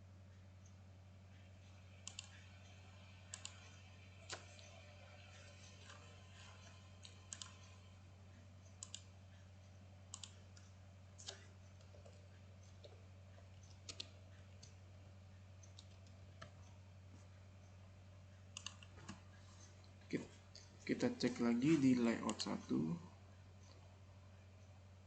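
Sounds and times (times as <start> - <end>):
faint low hum: 0.0 - 25.0
computer mouse clicks: 2.0 - 2.4, 3.3 - 4.8, 5.4 - 7.8, 8.6 - 9.1, 10.1 - 13.0, 13.6 - 14.8, 15.6 - 16.7, 18.5 - 19.2.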